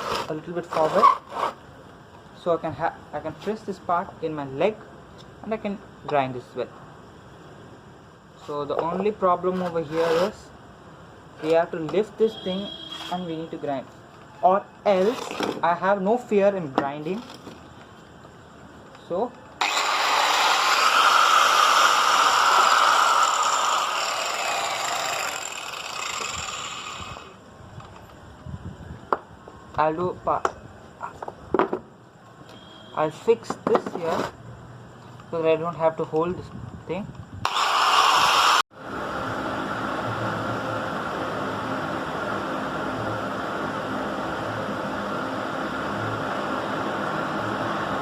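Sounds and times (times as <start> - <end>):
angle grinder whining: 19.6 - 27.4, 37.4 - 38.6.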